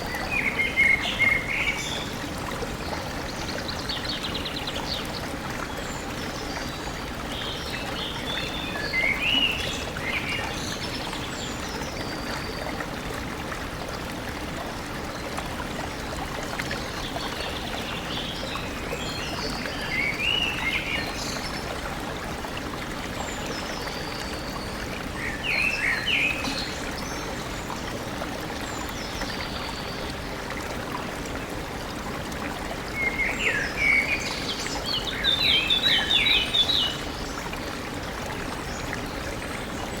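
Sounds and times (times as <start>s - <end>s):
stream flowing: 0.0s - 40.0s.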